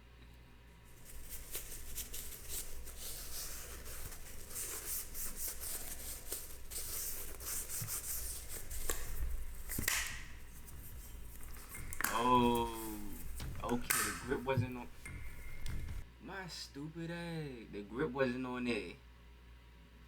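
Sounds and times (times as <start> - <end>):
metal scraping and rubbing: 0.9 - 16.0.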